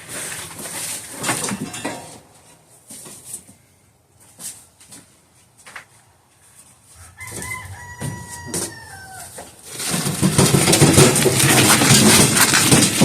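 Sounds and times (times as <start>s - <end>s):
rooster crowing: 6.9s - 9.5s.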